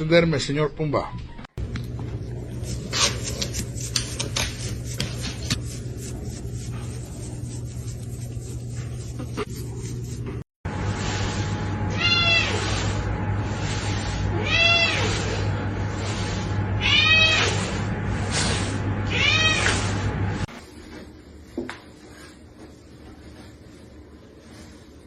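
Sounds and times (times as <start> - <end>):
steady hum: 1.6 - 20.5
cat meowing: 11.9 - 12.7, 14.3 - 15.4, 16.8 - 17.8, 19.1 - 19.8.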